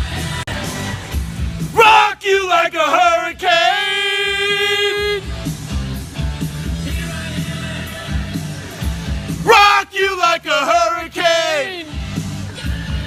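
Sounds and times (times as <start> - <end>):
drum and bass beat: 0.0 - 13.0
hard rock song: 0.0 - 13.0
man singing a long high note: 1.8 - 5.2, 9.4 - 11.9.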